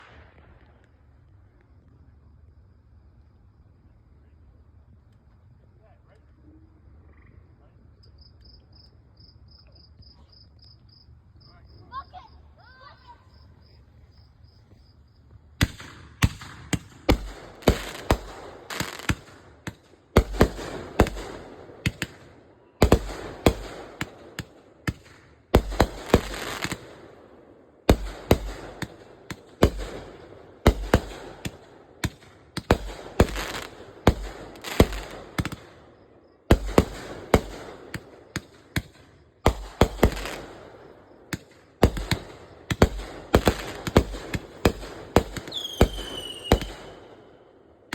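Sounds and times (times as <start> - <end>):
fireworks bangs: 0.0 - 0.9, 15.6 - 47.9
fireworks crackling: 0.0 - 1.6, 15.4 - 47.9.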